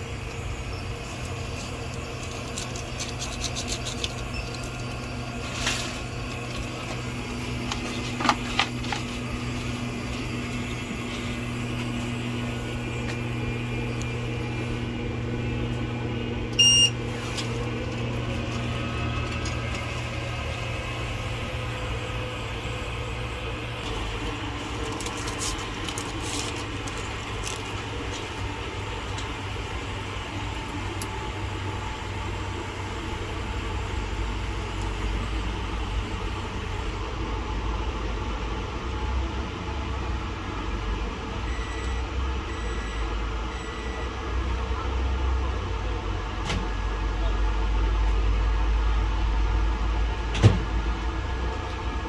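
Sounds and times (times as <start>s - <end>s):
low machine hum: 0.0s - 52.0s
short electronic beeps: 16.6s - 17.0s.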